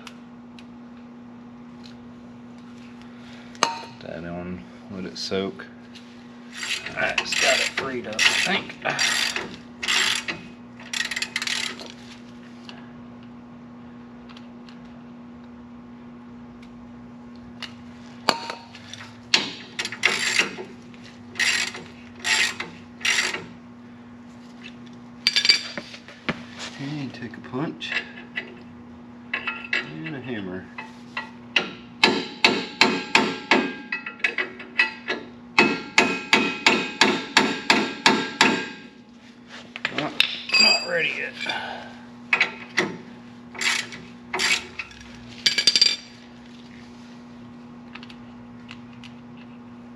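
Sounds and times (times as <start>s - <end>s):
steady low hum: 0.0s - 49.9s
metal scraping and rasping: 6.5s - 11.8s
hammer striking metal punch: 31.6s - 34.0s, 35.6s - 38.9s.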